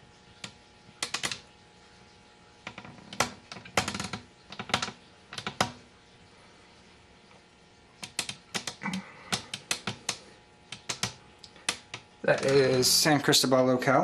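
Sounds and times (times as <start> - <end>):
sharp clicks and taps: 8.0 - 12.8.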